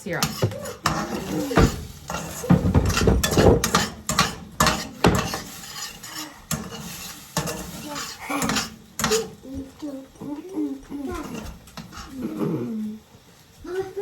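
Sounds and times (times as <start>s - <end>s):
utensil scraping a frying pan: 0.0s - 10.2s, 10.8s - 12.7s.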